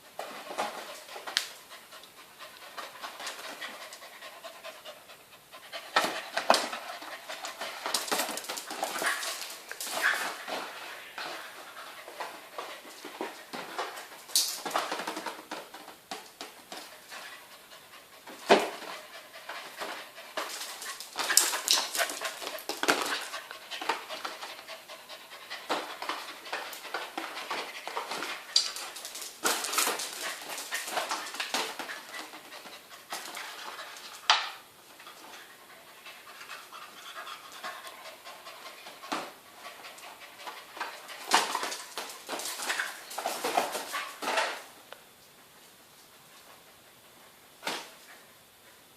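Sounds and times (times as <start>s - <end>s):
dog panting: 0.8s - 13.6s, 16.9s - 34.1s.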